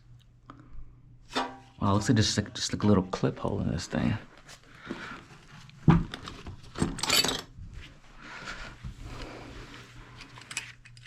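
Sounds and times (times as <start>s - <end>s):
metal parts clinking and knocking: 6.8s - 7.5s, 10.3s - 11.0s
metal parts rattling: 6.8s - 7.5s.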